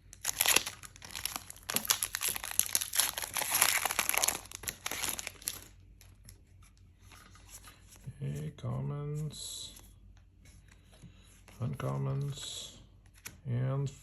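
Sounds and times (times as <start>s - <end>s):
plastic foil pack crinkling: 0.1s - 5.8s.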